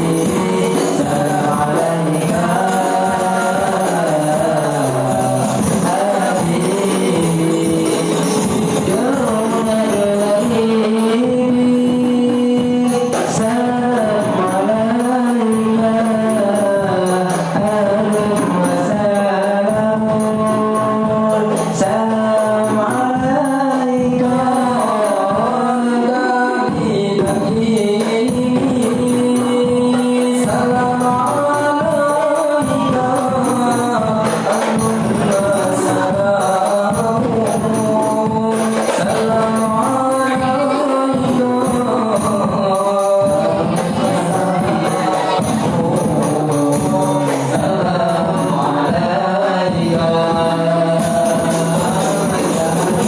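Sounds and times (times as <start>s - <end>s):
frame drums beating: 0.0s - 53.0s
voices singing: 0.0s - 53.0s.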